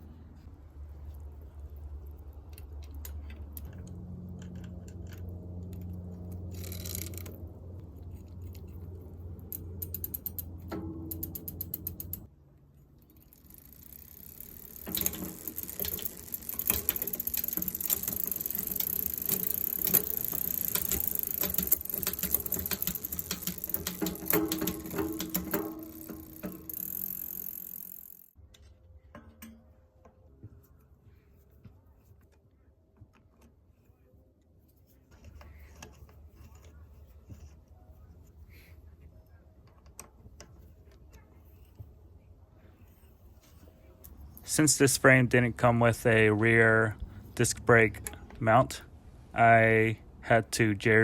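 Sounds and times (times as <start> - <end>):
low hum: 0.0 - 28.3
fast ratcheting mechanical clicks: 2.5 - 7.5, 9.4 - 12.3, 13.1 - 28.4.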